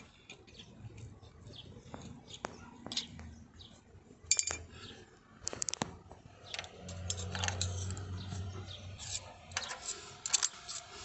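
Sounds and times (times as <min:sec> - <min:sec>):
metal parts clinking: 0:04.3 - 0:04.7, 0:06.5 - 0:08.2, 0:09.0 - 0:10.9.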